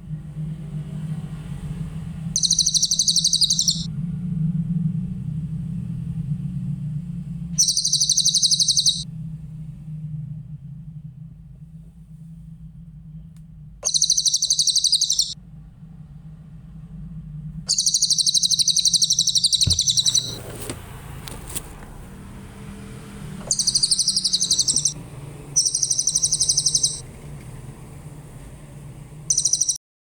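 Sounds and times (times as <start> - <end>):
steady low hum: 0.0 - 29.8
songbird trilling: 2.4 - 3.9, 7.6 - 9.0, 13.8 - 15.4, 17.7 - 20.4, 23.4 - 25.0, 25.6 - 27.0, 29.3 - 29.8.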